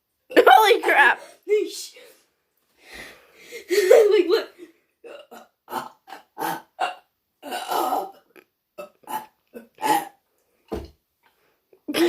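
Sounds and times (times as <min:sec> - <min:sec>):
girl burping: 0:03.8 - 0:10.2.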